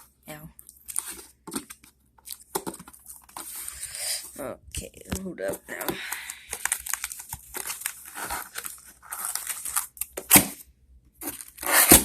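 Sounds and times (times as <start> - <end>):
packaging tearing and crinkling: 6.0 - 10.6, 11.2 - 12.0.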